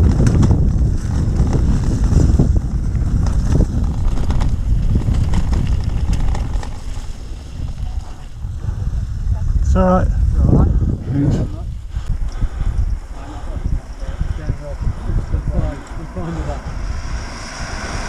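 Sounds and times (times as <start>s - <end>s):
bike rattles and knocks: 0.0s - 8.3s
tyre rumble: 0.0s - 9.6s
wind buffeting microphone: 0.0s - 18.0s.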